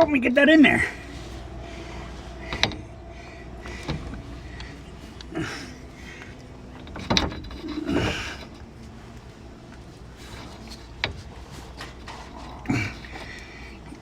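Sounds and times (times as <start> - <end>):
metal clanks and knocks: 0.9 - 8.9, 10.1 - 14.0.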